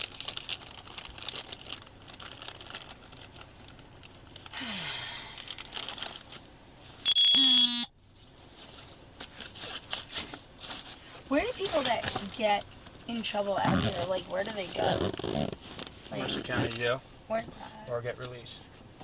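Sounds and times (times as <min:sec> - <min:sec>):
loud pitched tone: 0:07.0 - 0:07.9.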